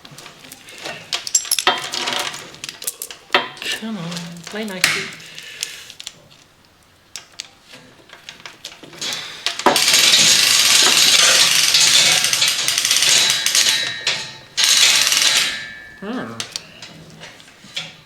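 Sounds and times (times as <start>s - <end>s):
power tool rattling: 9.5s - 16.0s.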